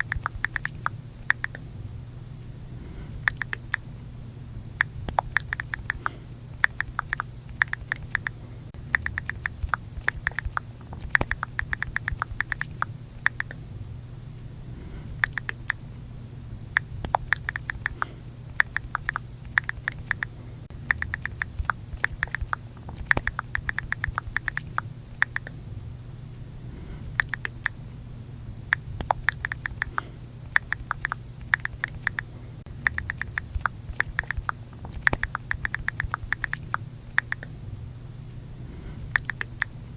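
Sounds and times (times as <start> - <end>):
phone keyboard clicks: 0.0 - 1.6, 5.1 - 8.3, 9.0 - 13.6, 17.0 - 20.3, 20.9 - 25.5, 29.0 - 30.0, 30.6 - 32.2, 32.9 - 37.5, 39.2 - 39.7
low hum: 0.0 - 39.9.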